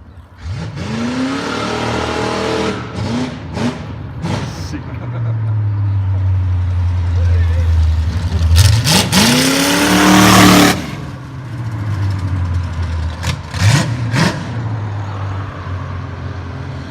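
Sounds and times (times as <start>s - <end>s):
engine revving: 0.4s - 5.2s, 7.1s - 12.2s, 13.0s - 14.8s.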